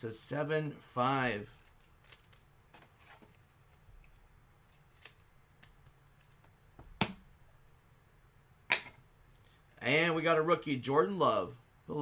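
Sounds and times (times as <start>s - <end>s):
trading cards rustling: 1.5s - 6.6s.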